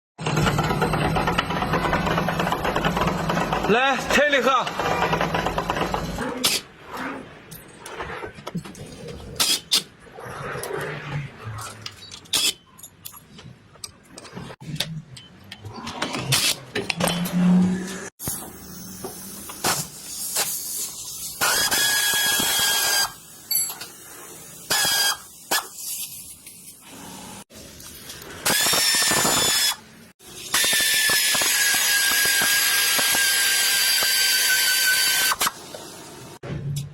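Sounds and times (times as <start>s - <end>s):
tools and metal parts clinking: 11.7s - 17.4s, 23.4s - 24.0s.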